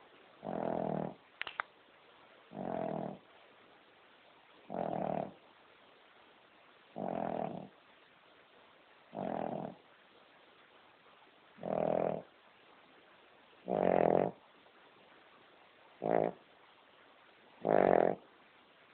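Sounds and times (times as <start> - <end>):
dog snoring: 0.4 - 1.2, 2.5 - 3.3, 4.7 - 5.4, 6.9 - 7.8, 9.1 - 9.8, 11.6 - 12.3, 13.6 - 14.4, 16.0 - 16.4, 17.6 - 18.2.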